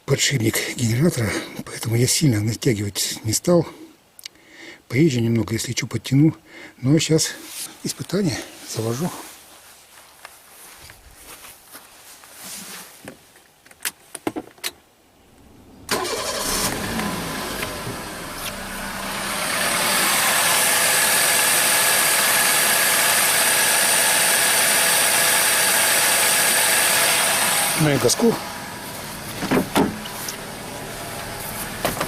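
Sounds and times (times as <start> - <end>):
car engine starting and idling: 15.3 - 32.0.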